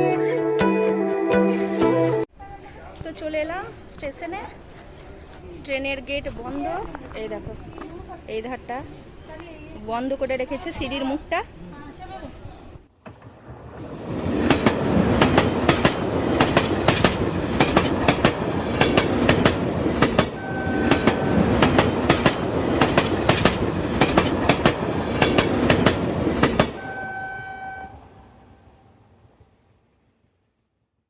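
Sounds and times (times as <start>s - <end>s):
train rumble: 12.9s - 30.4s
train horn note: 20.4s - 21.5s, 26.6s - 28.4s.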